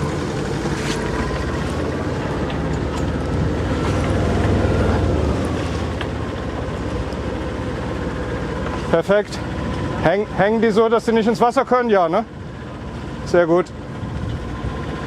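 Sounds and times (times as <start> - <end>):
boat engine running: 0.0 - 15.0
wind noise on microphone: 13.9 - 15.0.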